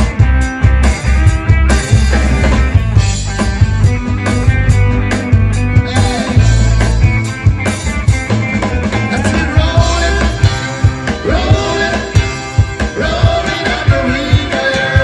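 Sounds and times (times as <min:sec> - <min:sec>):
rock band playing: 0:00.0 - 0:15.0
person singing: 0:05.8 - 0:06.6, 0:09.1 - 0:15.0.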